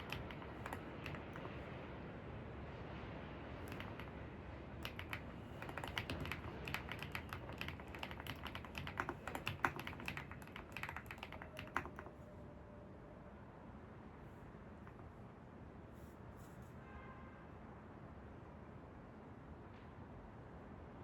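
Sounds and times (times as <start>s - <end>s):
computer keyboard typing: 0.0s - 1.6s, 3.6s - 4.2s, 4.8s - 12.2s, 14.9s - 15.1s.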